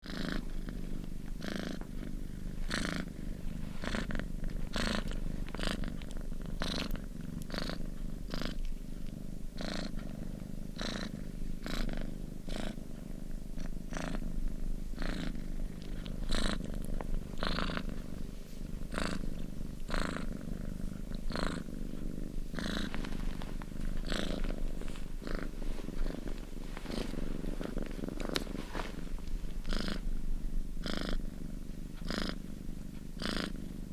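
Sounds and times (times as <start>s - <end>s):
cat purring: 0.0s - 33.9s.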